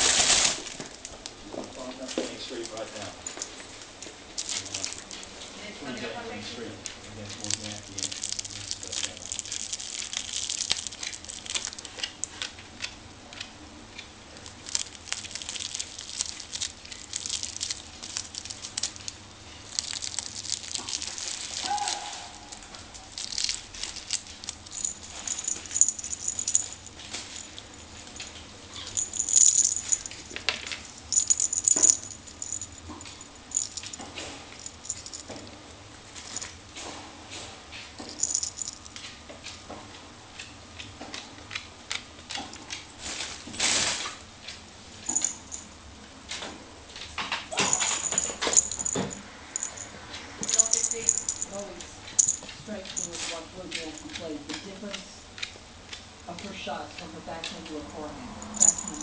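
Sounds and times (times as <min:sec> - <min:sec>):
toy rattling and clicking: 0:07.3 - 0:12.5, 0:14.4 - 0:35.4, 0:38.0 - 0:39.0, 0:45.0 - 0:45.7, 0:47.5 - 0:59.0
thin high ringing tone: 0:24.6 - 0:34.0, 0:45.1 - 0:45.7, 0:47.6 - 0:53.2, 0:58.4 - 0:59.0.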